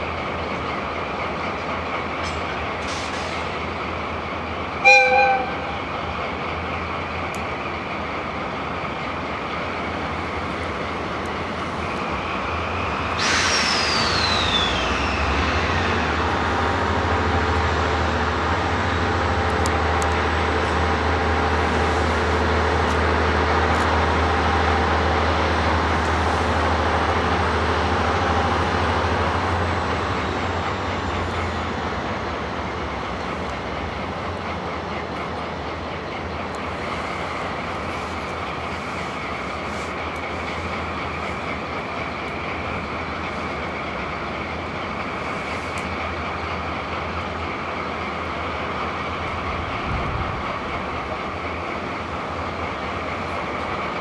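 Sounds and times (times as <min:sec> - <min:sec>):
diesel train passing: 0:00.0 - 0:54.0
train horn blast: 0:04.8 - 0:05.9.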